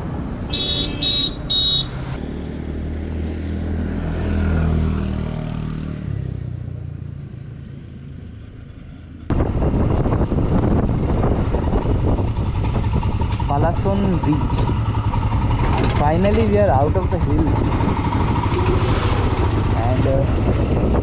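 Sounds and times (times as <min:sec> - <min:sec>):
road and wind noise: 0:00.0 - 0:21.0
vehicle horn honks: 0:00.5 - 0:02.2
motorcycle engine running: 0:09.4 - 0:21.0.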